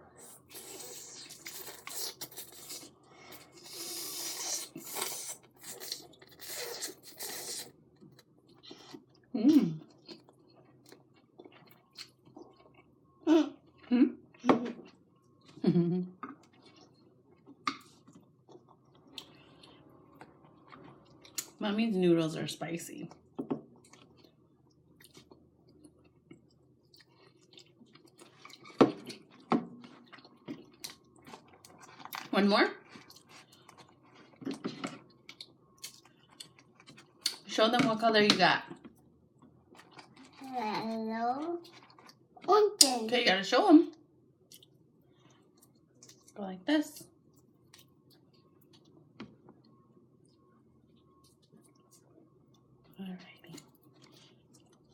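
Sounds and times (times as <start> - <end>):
person chewing noodles: 0.0 - 21.6, 23.2 - 37.4, 38.8 - 40.5, 41.6 - 42.5, 44.4 - 46.3, 53.5 - 54.9
noodles being slurped: 0.4 - 7.8.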